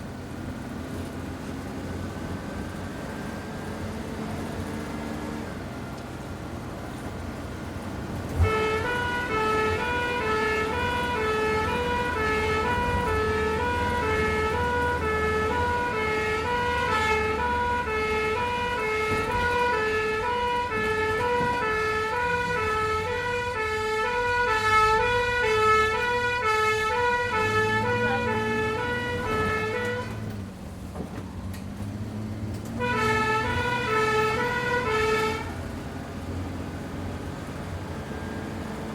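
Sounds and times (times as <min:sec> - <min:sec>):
ambulance engine running: 0:00.0 - 0:38.9
two-tone siren: 0:08.4 - 0:30.3, 0:32.8 - 0:35.6, 0:37.7 - 0:38.9.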